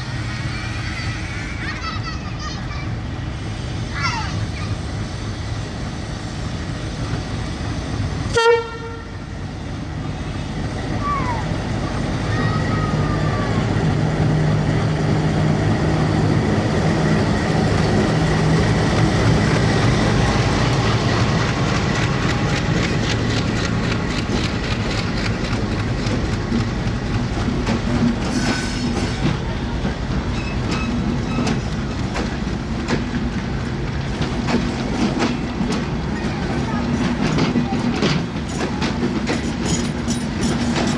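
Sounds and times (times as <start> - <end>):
passenger train rumbling: 0.0 - 40.9
wheels clicking over rail joints: 16.8 - 40.9.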